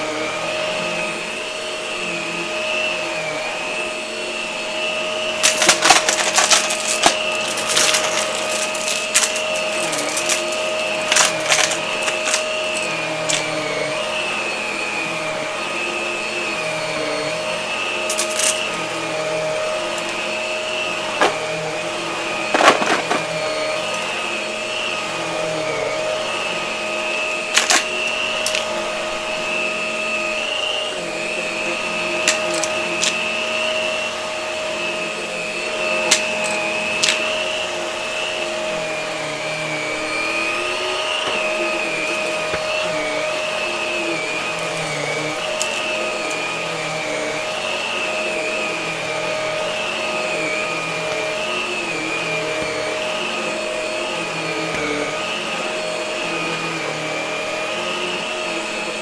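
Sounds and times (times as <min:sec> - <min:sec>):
vacuum cleaner motor whine: 0:00.0 - 0:59.0
debris crackling in vacuum: 0:05.4 - 0:13.5.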